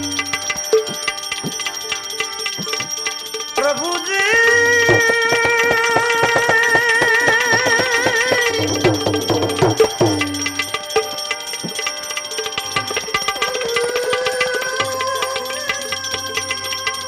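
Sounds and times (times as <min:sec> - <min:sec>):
tabla strokes: 0:00.0 - 0:17.0
person singing long held note: 0:13.5 - 0:17.0.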